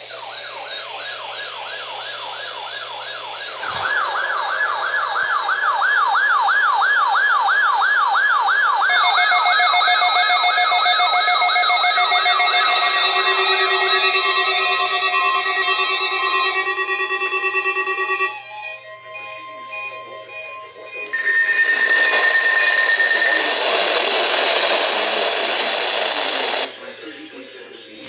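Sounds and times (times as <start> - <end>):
electronic siren wailing: 0.0 - 26.7
steady held tones: 8.4 - 26.7.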